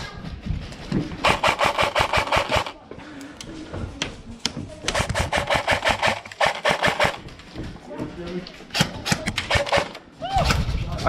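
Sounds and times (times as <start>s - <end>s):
airsoft gun bursts: 1.2s - 2.8s, 4.9s - 7.2s, 8.7s - 10.1s.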